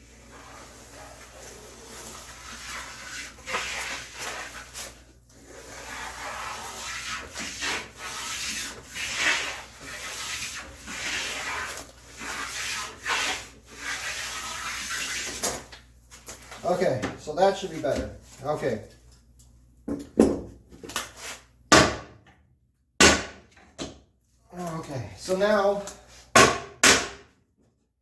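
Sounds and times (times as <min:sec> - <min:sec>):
hand plane shaving wood: 0:00.3 - 0:15.6.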